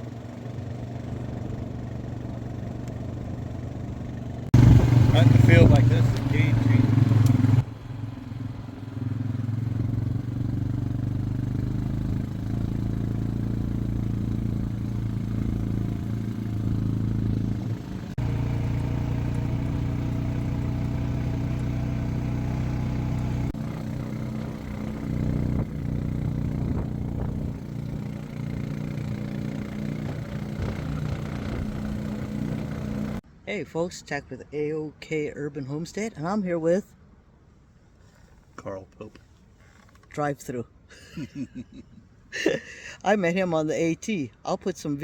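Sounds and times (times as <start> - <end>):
vehicle engine humming: 0.0 - 33.4.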